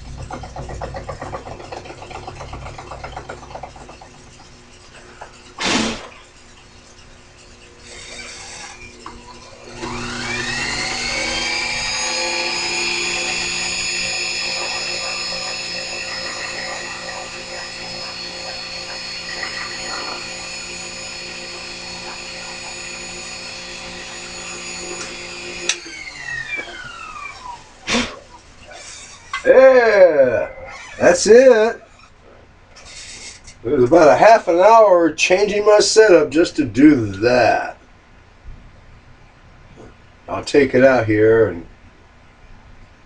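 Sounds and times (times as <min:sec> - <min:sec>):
milling machine motor: 0:00.0 - 0:05.6, 0:06.5 - 0:27.8
cutter milling metal: 0:07.0 - 0:27.7.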